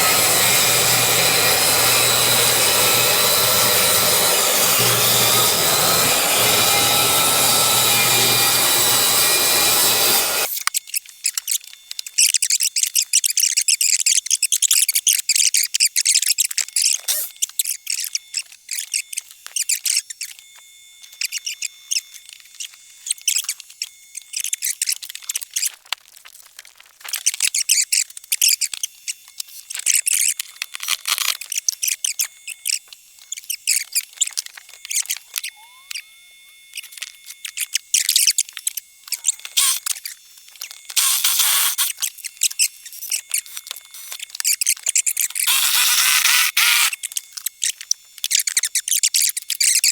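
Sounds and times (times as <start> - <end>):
scraping and squeaking on wood: 0.0 - 10.6, 17.0 - 17.3, 36.8 - 47.0.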